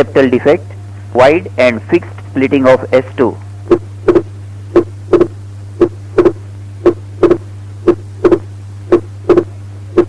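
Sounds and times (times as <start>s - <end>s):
steady low hum: 0.0s - 10.0s
heartbeat: 3.7s - 10.0s.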